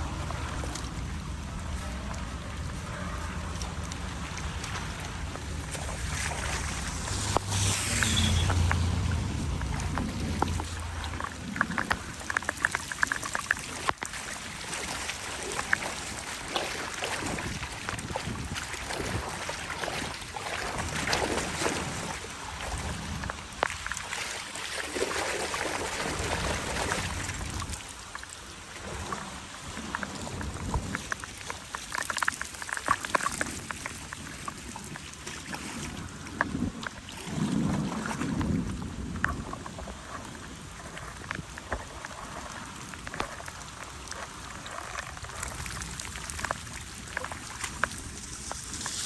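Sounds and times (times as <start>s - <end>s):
water trickling into drain: 0.0s - 21.6s.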